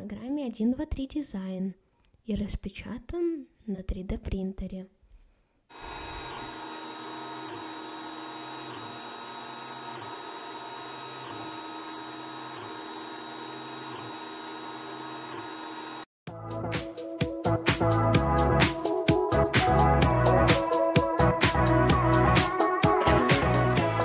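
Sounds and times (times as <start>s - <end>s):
printer stepper motors whining: 5.7s - 16.1s.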